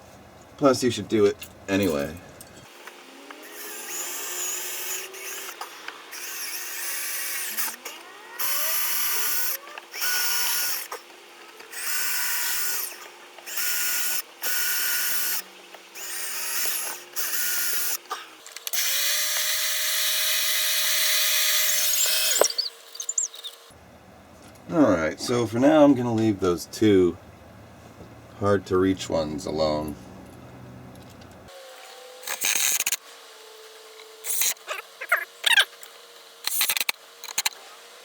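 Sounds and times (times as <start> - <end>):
power drill boring into wood: 3.1 - 23.7, 31.5 - 33.0, 34.1 - 37.7.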